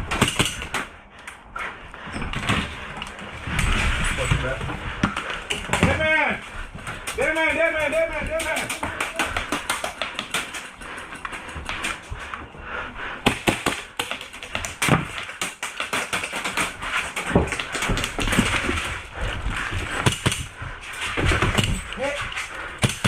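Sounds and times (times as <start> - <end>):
airsoft guns firing: 13.2 - 18.7, 22.8 - 23.0.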